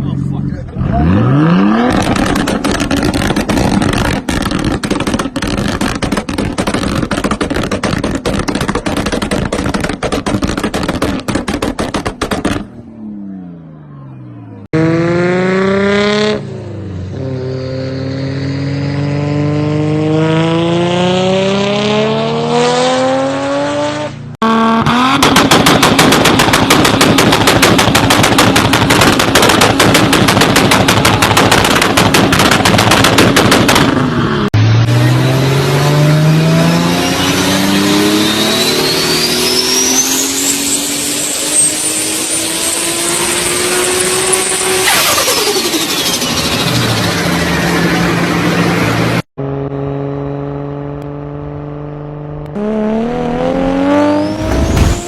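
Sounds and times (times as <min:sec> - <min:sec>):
car engine accelerating: 0:00.0 - 0:11.3, 0:12.3 - 0:32.0, 0:33.8 - 0:55.0
exhaust pops and bangs: 0:01.8 - 0:12.8, 0:24.8 - 0:34.1, 0:54.2 - 0:55.0
turbo whistle: 0:38.2 - 0:43.8.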